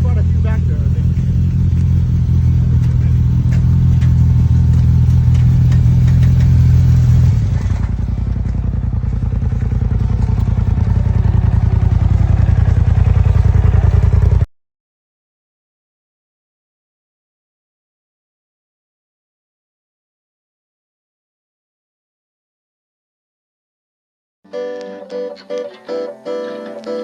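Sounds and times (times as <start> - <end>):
side-by-side engine running: 0.0 - 14.5.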